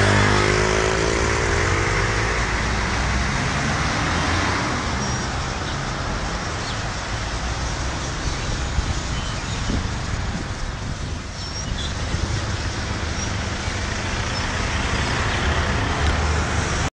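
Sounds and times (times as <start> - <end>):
road traffic noise: 0.0 - 16.9
swallows chirping: 7.7 - 10.0, 11.3 - 14.6.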